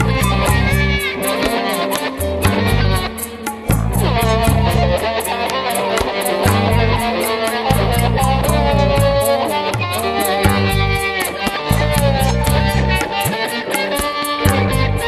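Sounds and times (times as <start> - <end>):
pulsing bass line: 0.0 - 1.4, 2.1 - 5.3, 6.5 - 13.3, 14.4 - 15.0
guitar sliding melody: 0.0 - 15.0
steady drum beat: 0.0 - 15.0.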